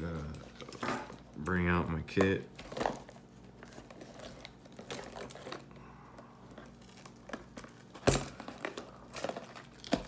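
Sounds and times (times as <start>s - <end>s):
rustling of packaging: 2.6s - 10.0s.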